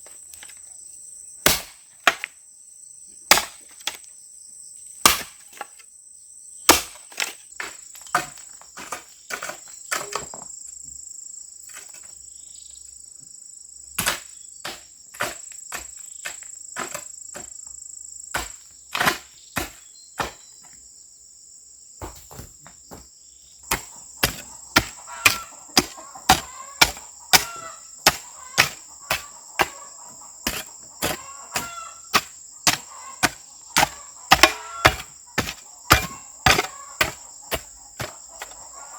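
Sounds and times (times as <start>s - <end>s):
crickets trilling: 0.0s - 38.9s
hand tool striking: 23.7s - 29.8s, 30.4s - 38.6s.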